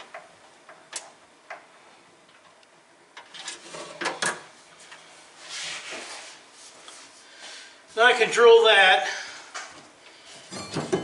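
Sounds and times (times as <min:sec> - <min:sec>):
short scrape: 0:05.4 - 0:06.4.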